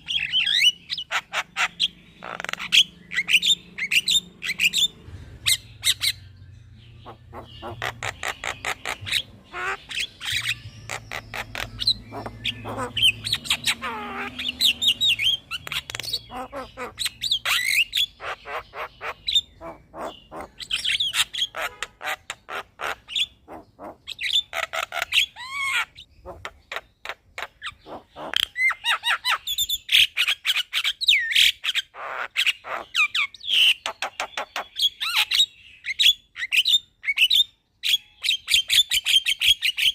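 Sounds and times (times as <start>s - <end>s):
bird singing clicks and whistles: 15.2s - 16.2s.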